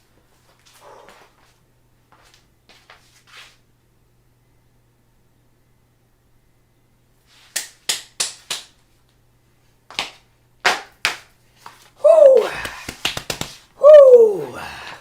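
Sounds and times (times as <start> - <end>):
sharp snaps: 7.5 - 8.7, 12.0 - 15.0.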